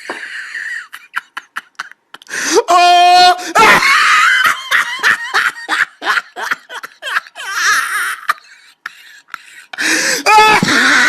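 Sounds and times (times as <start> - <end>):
person laughing: 0.0 - 2.3, 3.4 - 11.0
person shouting: 2.6 - 3.8, 10.2 - 11.0.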